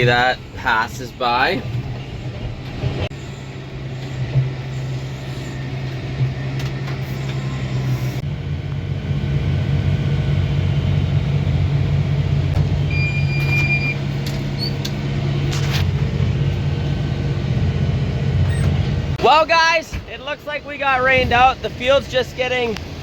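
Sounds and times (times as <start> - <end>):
diesel engine running: 0.0 - 23.0
short high beep: 12.9 - 14.0.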